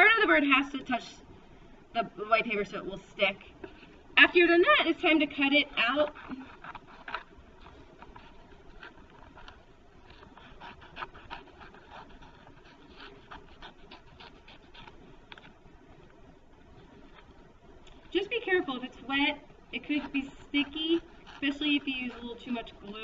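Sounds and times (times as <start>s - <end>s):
scissors cutting paper: 4.2s - 15.6s, 19.8s - 23.0s.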